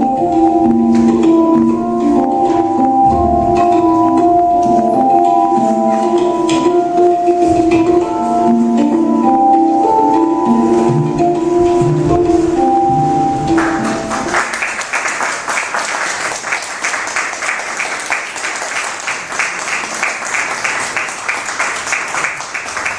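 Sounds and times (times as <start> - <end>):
organ-like chords: 0.0 - 14.5
audience applause: 13.5 - 22.9.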